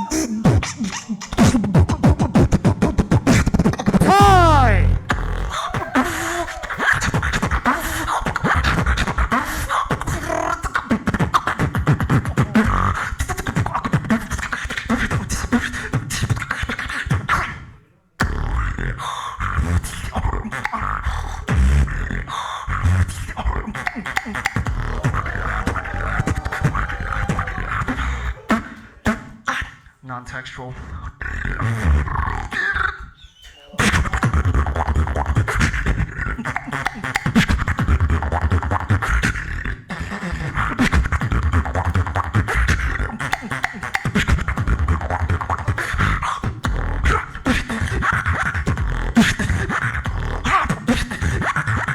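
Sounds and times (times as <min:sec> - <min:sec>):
beatboxing: 0:00.0 - 0:51.9.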